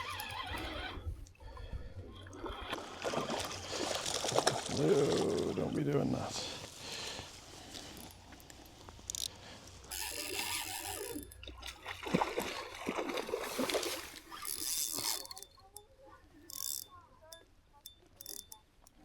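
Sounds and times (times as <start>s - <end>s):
fish splashing in water: 2.3s - 5.8s, 9.9s - 15.3s.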